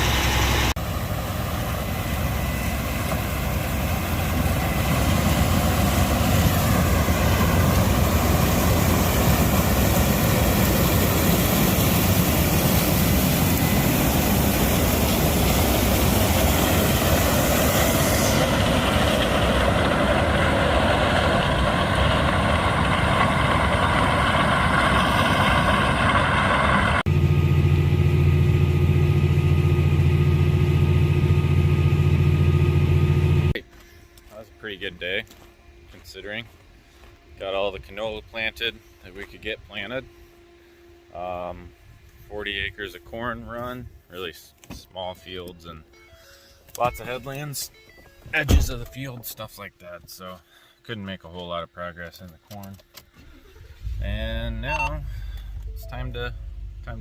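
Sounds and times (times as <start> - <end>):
heavy machinery engines running: 0.0 - 38.0, 53.4 - 57.0
low engine drone with hum: 0.0 - 57.0.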